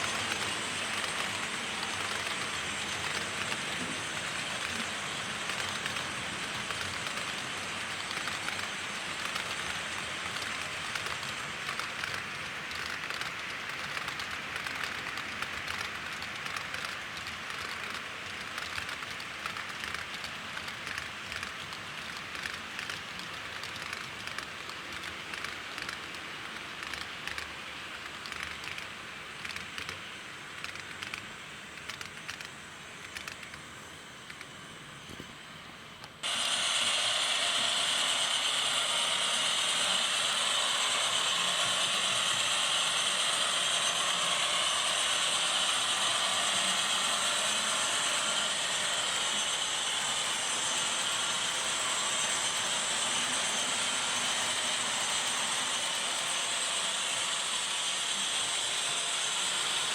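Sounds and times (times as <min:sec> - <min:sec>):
small wheel clicks: 0:00.0 - 0:33.6
model train whirring hiss: 0:00.0 - 0:59.9.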